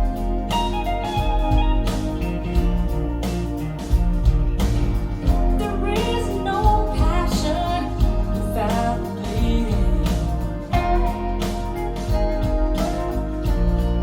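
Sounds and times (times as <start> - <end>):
song over loudspeakers: 5.2 - 14.0.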